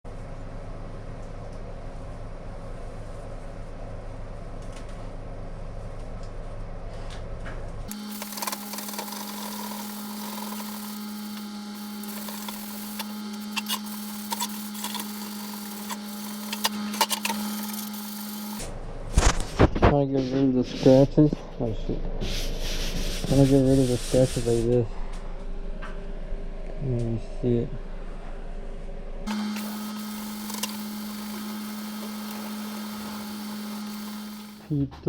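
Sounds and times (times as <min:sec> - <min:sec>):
electric power tool motor running: 0:07.9 - 0:18.7, 0:29.3 - 0:34.7
low steady hum: 0:24.6 - 0:35.0.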